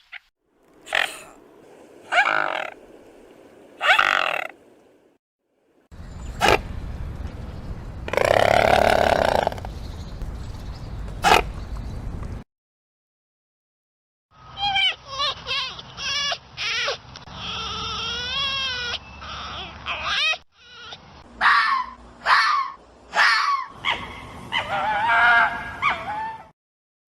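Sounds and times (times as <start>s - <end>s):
animal calling: 0.8s - 1.4s, 2.1s - 2.8s, 3.8s - 4.6s.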